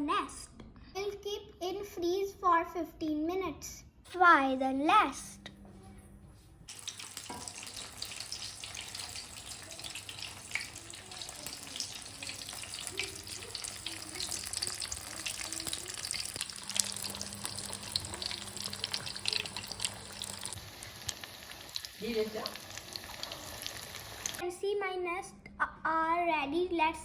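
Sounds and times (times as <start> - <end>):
potato nests deep-frying in oil: 6.7 - 24.4.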